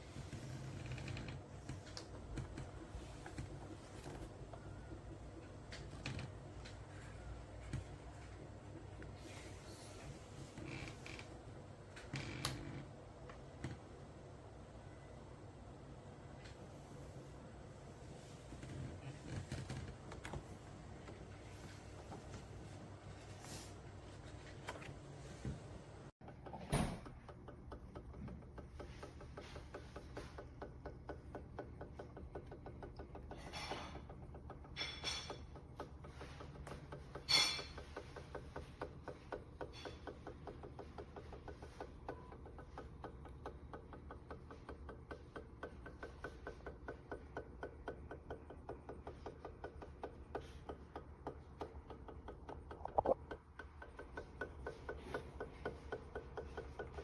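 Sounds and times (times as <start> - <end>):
laminator rollers humming: 0.0 - 57.0
fast even gear ticking: 27.1 - 57.0.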